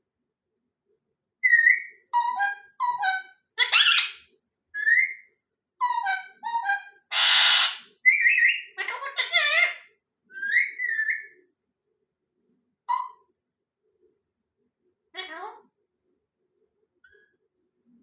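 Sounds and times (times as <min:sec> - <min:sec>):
parrot whistled calls: 0:01.4 - 0:04.2, 0:04.8 - 0:05.3, 0:06.0 - 0:09.7, 0:10.3 - 0:11.4
parrot harsh rasping call: 0:07.1 - 0:09.8.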